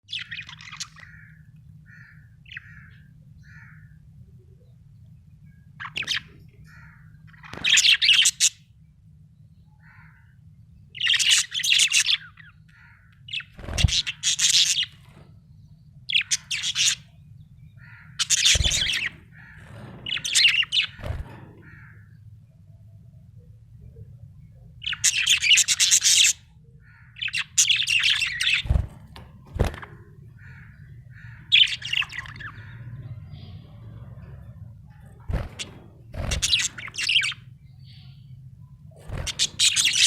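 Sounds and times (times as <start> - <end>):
low steady hum: 0.0 - 40.0
budgerigar chirping and chattering: 36.1 - 38.1, 39.2 - 40.0.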